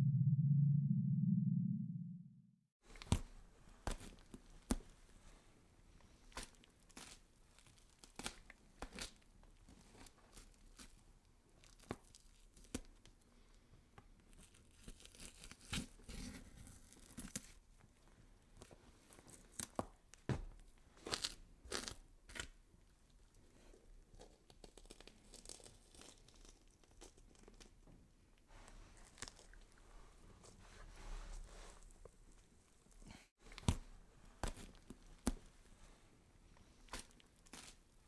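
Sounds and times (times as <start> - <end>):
tearing and crunching with cracks: 21.0 - 22.6, 24.3 - 27.7, 36.8 - 37.8.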